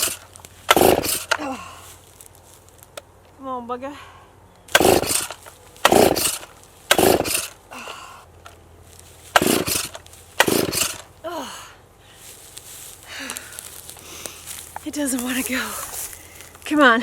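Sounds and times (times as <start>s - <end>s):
chainsaw starter cord yanks: 0.0s - 1.5s, 4.7s - 8.6s, 9.3s - 11.2s.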